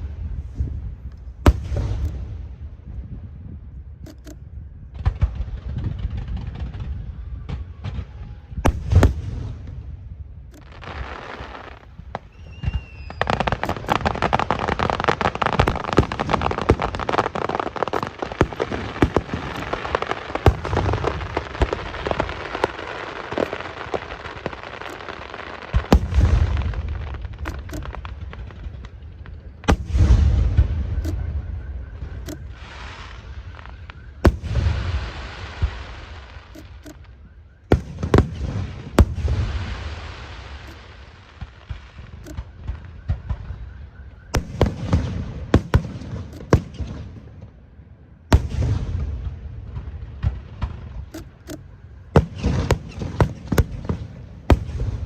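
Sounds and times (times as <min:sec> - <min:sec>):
deep booms of shells bursting: 0:00.0 - 0:03.4, 0:04.0 - 0:47.4, 0:48.3 - 0:55.0
firework whistle: 0:10.6 - 0:28.0
rapid firework crackling: 0:10.6 - 0:43.8, 0:48.4 - 0:55.0.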